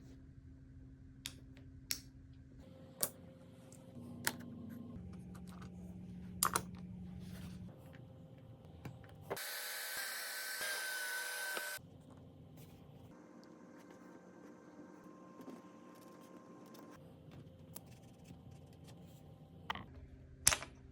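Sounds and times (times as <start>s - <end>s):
small power tool whirring: 9.4s - 11.8s.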